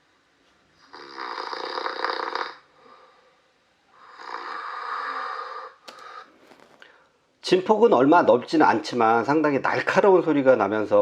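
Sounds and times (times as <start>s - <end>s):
man snoring: 0.8s - 2.7s, 4.0s - 5.8s.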